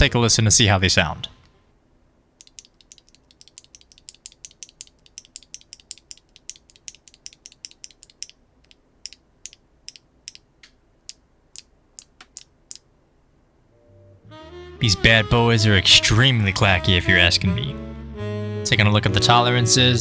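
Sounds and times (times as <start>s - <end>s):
mechanical keyboard keys clacking: 2.4s - 8.4s.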